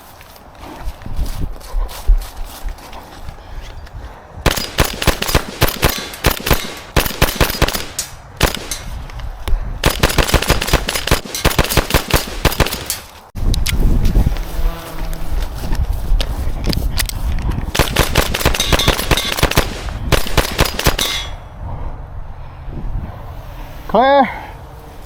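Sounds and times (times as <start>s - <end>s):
airsoft guns firing rapidly: 4.4s - 8.8s, 9.8s - 13.0s, 17.7s - 21.2s
low rumbling noise: 13.3s - 23.9s.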